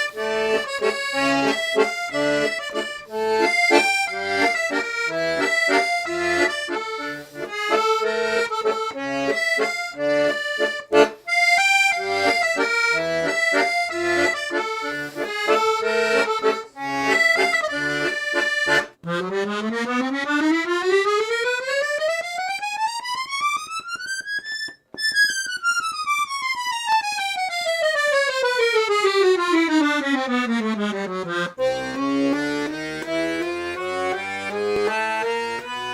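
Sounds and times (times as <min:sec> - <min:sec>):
button accordion playing: 0:00.0 - 0:35.9.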